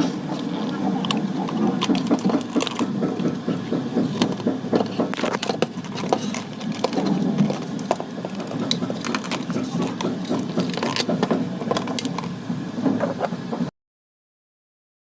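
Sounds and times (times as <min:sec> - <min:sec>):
plastic gears clicking: 0:00.0 - 0:03.4, 0:04.0 - 0:12.4.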